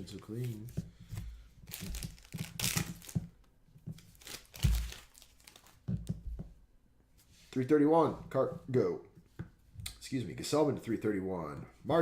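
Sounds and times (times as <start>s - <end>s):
cards rustling: 0.1s - 3.2s, 3.9s - 5.8s
wrapper crinkling and tearing: 1.7s - 3.2s, 4.1s - 5.8s.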